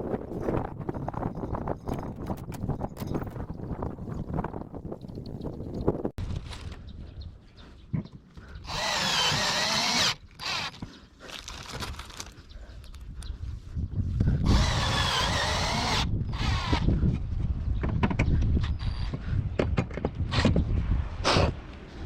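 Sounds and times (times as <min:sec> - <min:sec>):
power drill whining: 0:08.6 - 0:10.9, 0:14.4 - 0:16.8.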